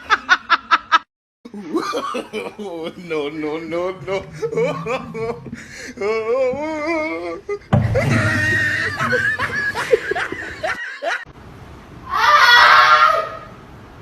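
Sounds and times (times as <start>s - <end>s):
people laughing: 0.0s - 11.3s
people talking: 1.5s - 7.6s.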